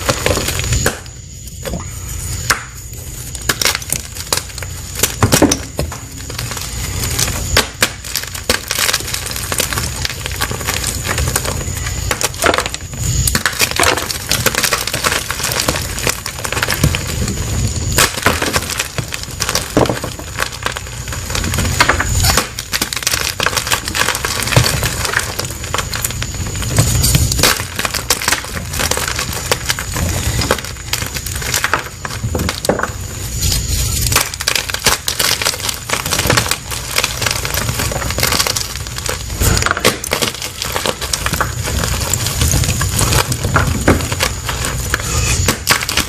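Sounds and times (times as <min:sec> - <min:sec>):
chalk being crushed: 0:00.0 - 0:46.0.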